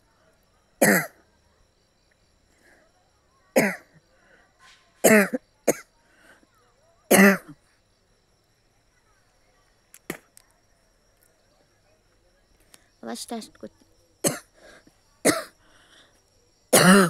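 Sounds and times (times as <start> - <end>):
person coughing: 0.8 - 1.2, 14.2 - 14.5, 15.3 - 15.5, 16.8 - 17.0.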